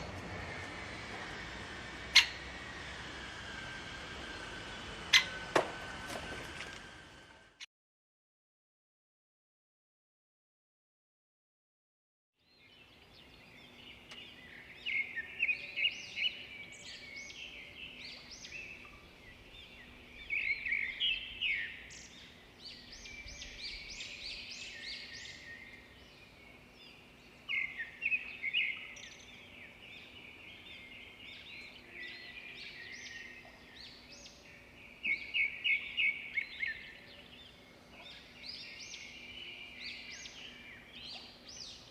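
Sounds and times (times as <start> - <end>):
small songbirds chirping: 12.4 - 41.9.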